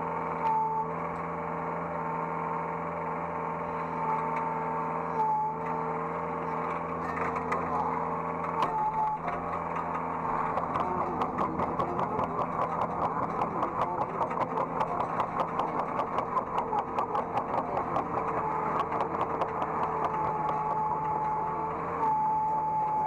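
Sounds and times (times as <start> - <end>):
excavator engine hum: 0.0 - 23.0
hydraulic whines: 3.8 - 23.0
fast rhythmic clatter: 10.3 - 21.4.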